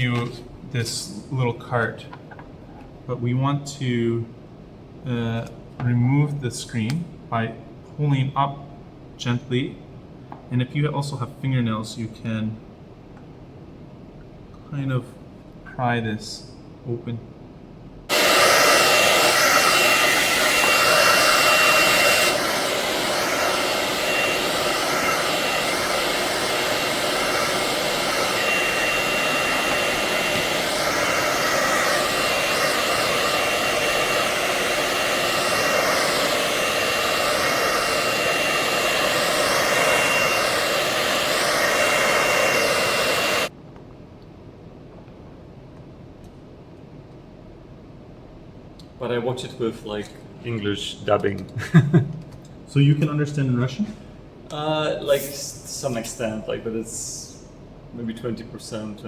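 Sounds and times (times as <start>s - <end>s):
hot-air blower whining: 18.1s - 43.6s.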